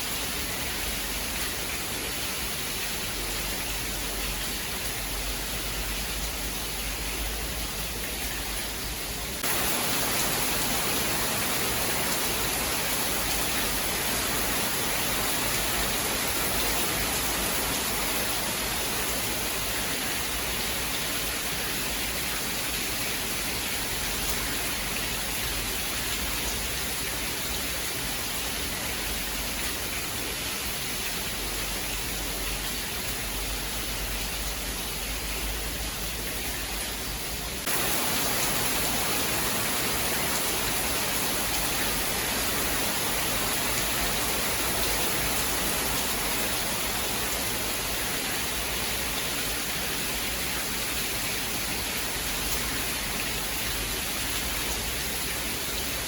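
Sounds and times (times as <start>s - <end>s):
steady rain hiss: 0.0s - 56.0s.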